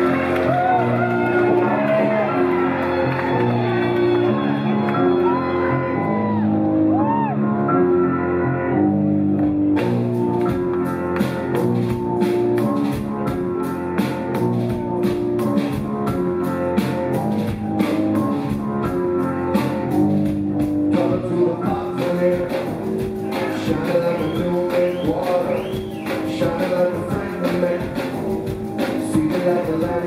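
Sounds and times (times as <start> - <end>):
rock band playing live: 0.0 - 30.0
drum kit beat with cymbals: 9.5 - 30.0.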